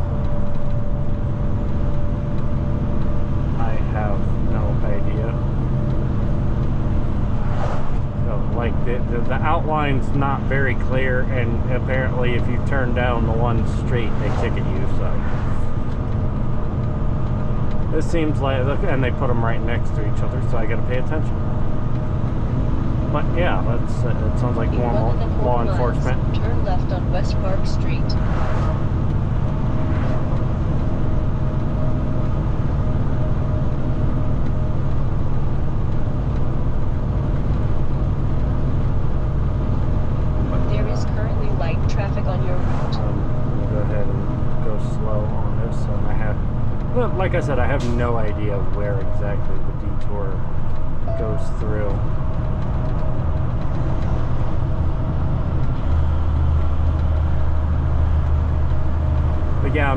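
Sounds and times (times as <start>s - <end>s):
road noise: 0.0s - 59.9s
truck diesel engine drone: 0.0s - 59.9s.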